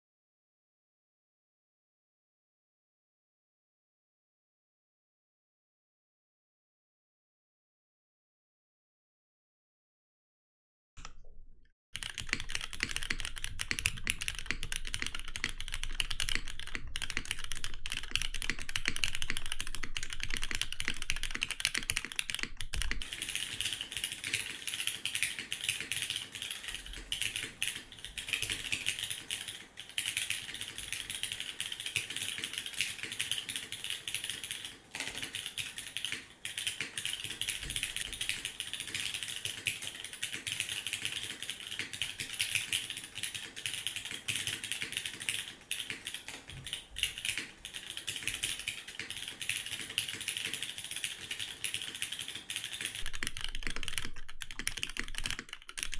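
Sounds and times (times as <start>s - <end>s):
mechanical keyboard typing: 12.0s - 55.9s.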